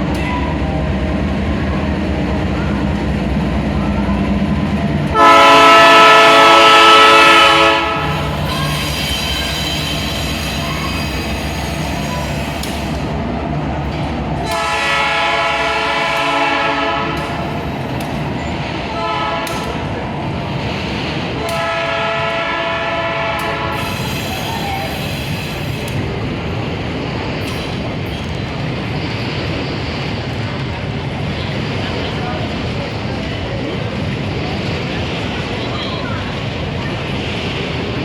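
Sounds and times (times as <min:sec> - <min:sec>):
train locomotive rumbling: 0:00.0 - 0:38.0
train air horn blasts: 0:05.1 - 0:10.6, 0:14.5 - 0:17.2, 0:19.0 - 0:19.8, 0:21.5 - 0:24.4.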